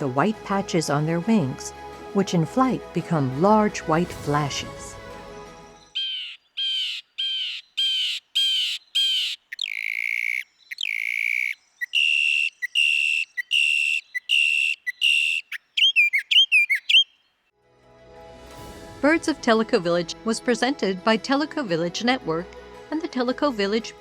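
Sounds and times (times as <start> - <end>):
mockingbird singing: 5.7 - 17.5.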